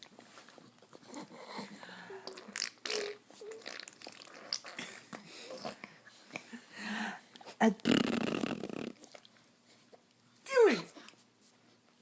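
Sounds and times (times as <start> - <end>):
baby cooing: 1.4 - 4.9.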